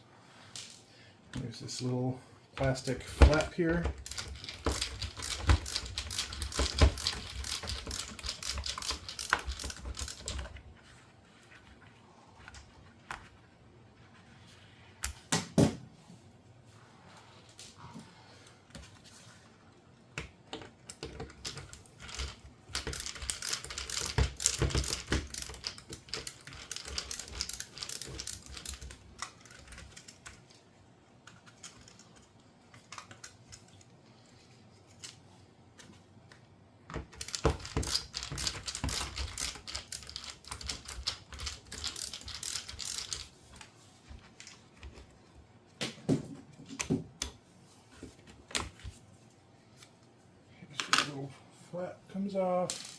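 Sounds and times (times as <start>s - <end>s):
screwdriver rapid clicking: 2.9s - 10.5s, 21.5s - 29.0s, 37.2s - 43.3s.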